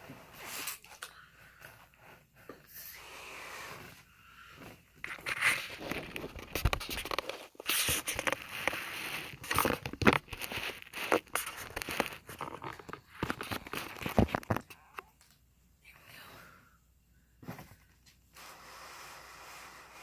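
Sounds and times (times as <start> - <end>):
wrappers crinkling and rustling: 5.0 - 14.6.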